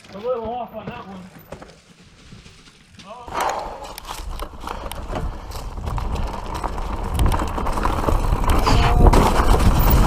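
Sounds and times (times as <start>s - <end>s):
bike tyres crunching over rock: 0.0s - 10.0s
wind rumble on microphone: 4.0s - 10.0s.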